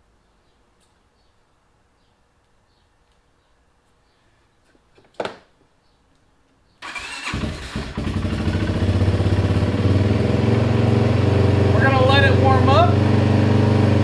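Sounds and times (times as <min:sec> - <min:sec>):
atv engine starting and idling: 0:06.8 - 0:14.0.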